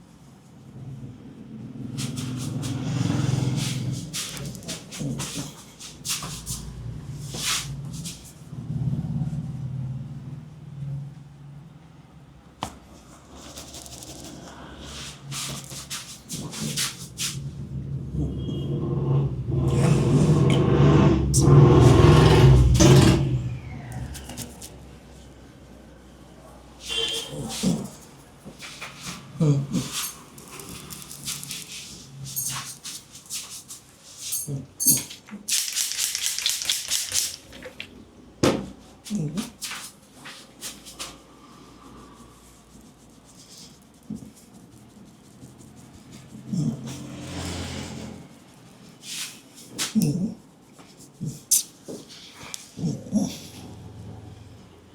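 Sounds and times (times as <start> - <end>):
hands rubbing skin and hair: 2.0 - 6.6, 7.3 - 8.4, 13.3 - 17.4, 24.0 - 24.8, 27.5 - 34.5, 35.5 - 37.9, 39.4 - 47.1, 49.0 - 52.8.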